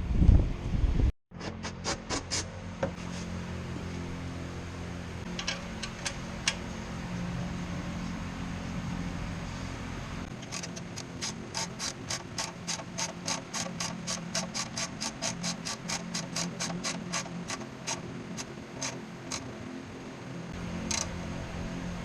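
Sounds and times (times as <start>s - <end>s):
ratchet wrench clicking: 10.3s - 19.5s, 20.9s - 21.1s.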